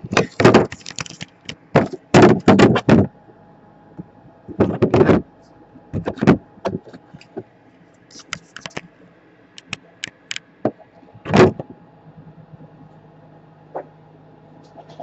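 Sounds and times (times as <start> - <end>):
steady low hum: 0.0 - 15.0
tools clicking and tapping: 9.6 - 10.4.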